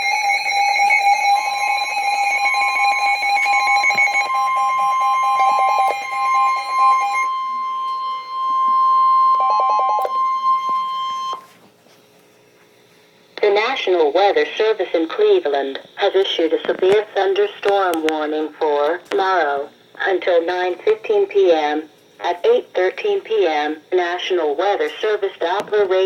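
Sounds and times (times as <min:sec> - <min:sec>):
electronic alert tones: 0:02.4 - 0:11.5.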